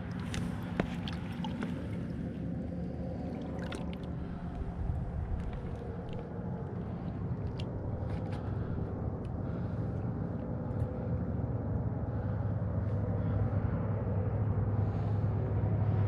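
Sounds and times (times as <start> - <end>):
small waves lapping: 0.0 - 11.2
low rumble: 0.0 - 16.0.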